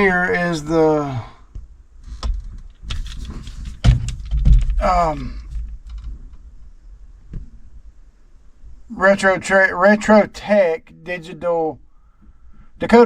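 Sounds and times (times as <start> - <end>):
sharp clicks and knocks: 1.5 - 6.6
low rumbling handling thumps: 1.5 - 8.9.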